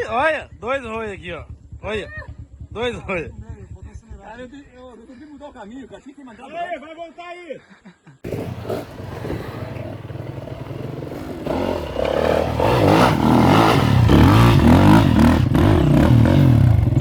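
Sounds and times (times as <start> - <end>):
motorcycle engine revving: 8.2 - 17.0.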